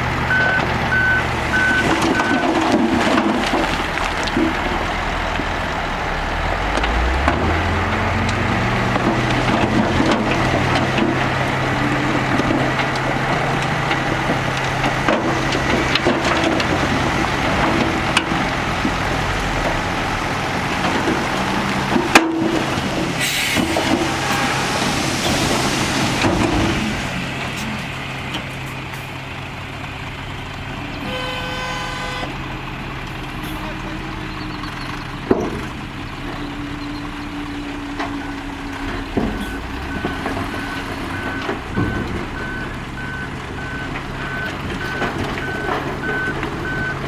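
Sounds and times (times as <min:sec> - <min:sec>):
diesel engine revving: 0:00.0 - 0:47.0
metal clanks and knocks: 0:37.8 - 0:42.6.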